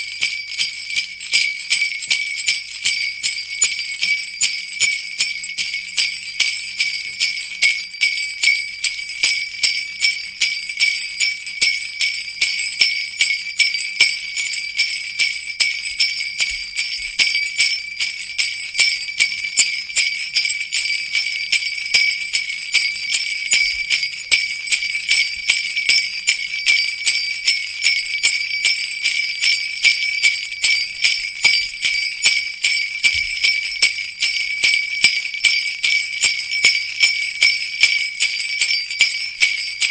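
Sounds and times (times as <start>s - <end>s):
sleigh bells jingling: 0.0s - 39.9s.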